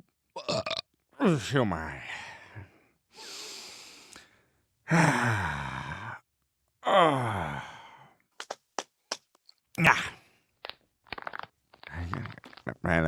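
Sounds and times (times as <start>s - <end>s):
man groaning sighs: 4.9s - 6.2s, 6.8s - 8.1s.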